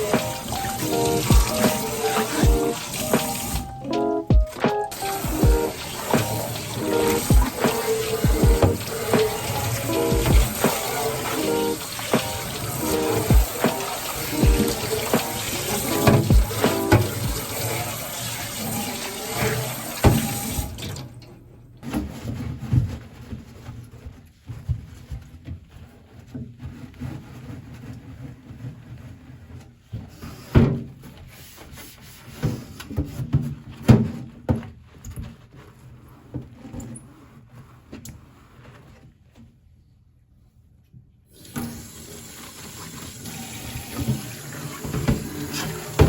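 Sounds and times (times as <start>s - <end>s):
tap water running into sink: 0.0s - 3.7s, 4.9s - 21.1s, 41.4s - 46.0s
items clattering in sink: 4.8s - 21.1s, 42.9s - 46.0s.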